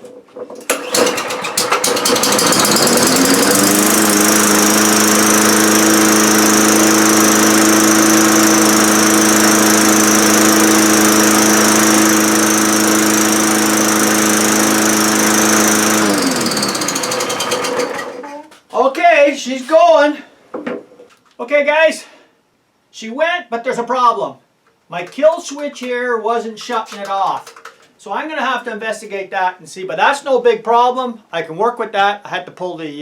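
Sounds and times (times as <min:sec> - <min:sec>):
lawnmower engine running: 0:00.6 - 0:18.2.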